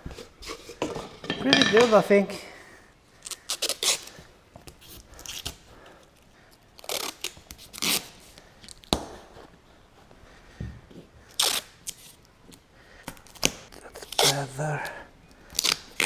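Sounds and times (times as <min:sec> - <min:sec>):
crinkling and scraping of tape: 0:03.2 - 0:09.5, 0:11.2 - 0:16.0.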